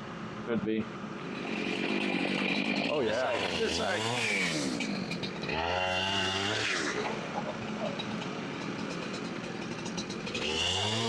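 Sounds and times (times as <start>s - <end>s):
chainsaw engine revving: 1.2s - 11.0s.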